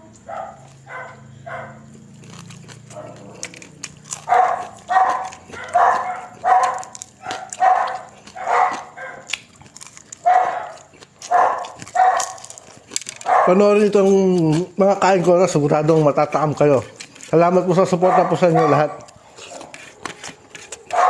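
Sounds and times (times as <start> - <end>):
dog barking: 0.2 - 1.8, 2.9 - 3.3, 4.2 - 9.4, 10.2 - 12.5, 13.2 - 13.7, 18.0 - 19.6.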